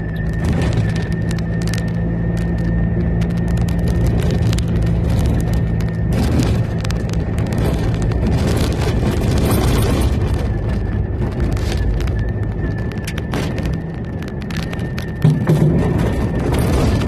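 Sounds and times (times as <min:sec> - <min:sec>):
car engine running: 0:00.0 - 0:17.0
rattles and knocks: 0:13.0 - 0:17.0.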